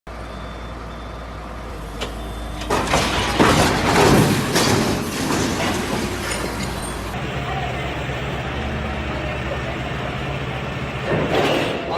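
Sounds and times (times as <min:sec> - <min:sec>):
heavy truck rumbling: 0:00.1 - 0:11.9
loud rushing clattering noise: 0:01.9 - 0:07.2.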